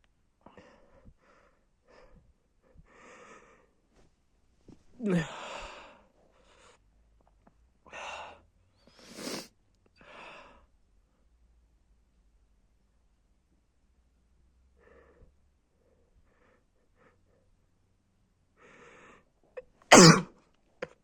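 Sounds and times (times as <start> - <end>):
breaths and sniffs: 8.9 - 9.5
man sneezing: 19.9 - 20.3.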